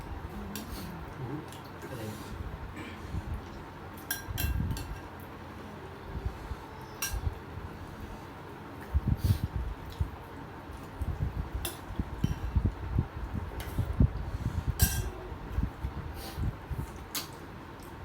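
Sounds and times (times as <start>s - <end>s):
wet chewing and mouth smacking: 16.8s - 18.0s.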